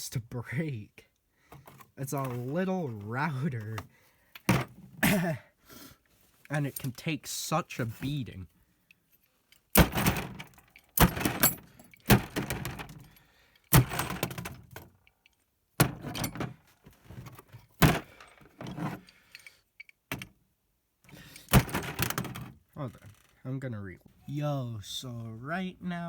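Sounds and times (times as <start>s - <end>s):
plastic case and parts rattling: 9.8s - 13.2s, 13.8s - 15.0s, 15.8s - 19.1s, 21.4s - 23.3s.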